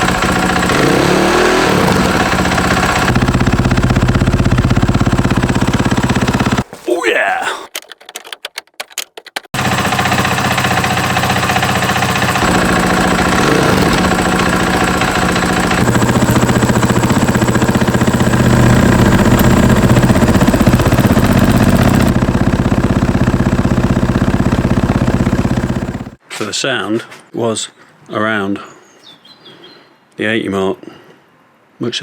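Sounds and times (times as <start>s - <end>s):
motorcycle engine idling: 0.0s - 6.7s, 9.6s - 26.2s.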